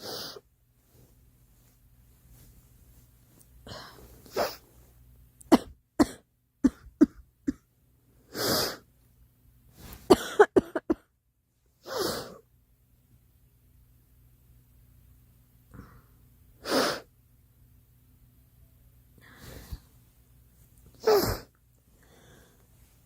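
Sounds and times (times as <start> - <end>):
girl coughing: 5.5 - 7.7, 10.1 - 11.1.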